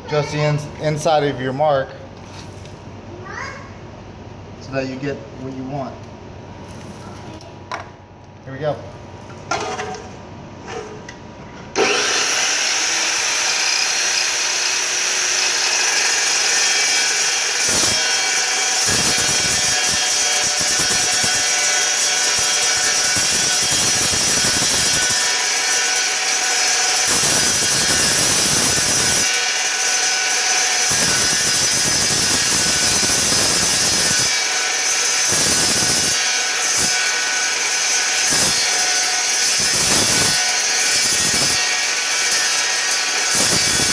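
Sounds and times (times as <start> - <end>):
chop saw cutting steel: 11.8 - 43.9.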